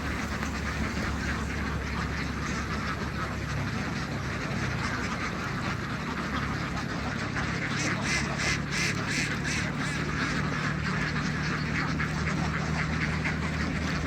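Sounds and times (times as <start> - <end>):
faint low hum: 0.0 - 3.7
flock of ducks quacking: 0.0 - 14.0.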